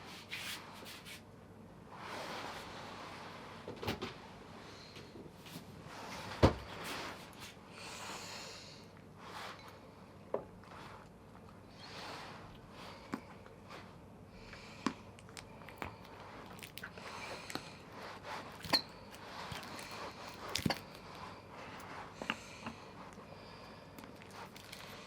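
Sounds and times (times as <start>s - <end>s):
rustling of handled objects: 15.8s - 23.3s.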